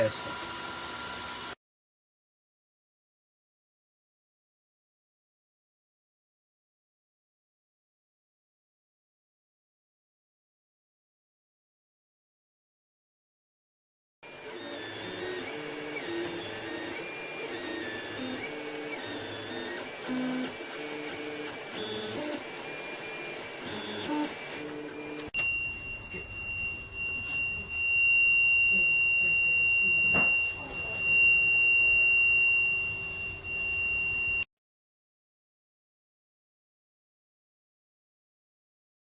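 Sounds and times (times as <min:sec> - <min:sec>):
high steady printer whine: 0:00.0 - 0:01.6, 0:14.2 - 0:34.4
stepper motors whining: 0:00.0 - 0:01.6, 0:14.3 - 0:34.4.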